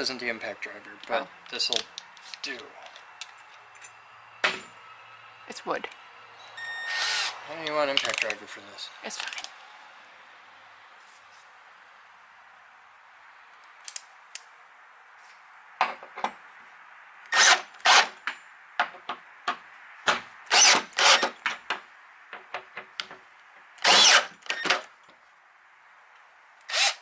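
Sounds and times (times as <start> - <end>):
drill driving screws into wood: 6.8 - 7.4, 17.3 - 18.3, 20.5 - 21.4, 23.8 - 24.9, 26.7 - 27.0.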